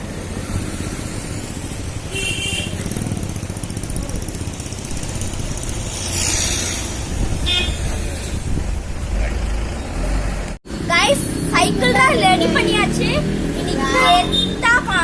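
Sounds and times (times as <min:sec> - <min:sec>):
vehicle engine running close by: 0:00.0 - 0:10.6
road traffic: 0:00.0 - 0:15.0.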